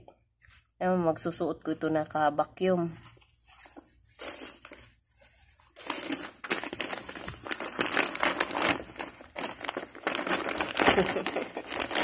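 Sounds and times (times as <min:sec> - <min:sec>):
plastic packaging crinkling: 0:03.5 - 0:12.0.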